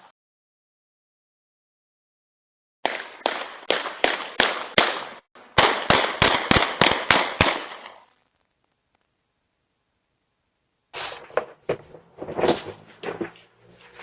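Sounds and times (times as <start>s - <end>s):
loud sharp explosive bangs: 2.8s - 8.0s.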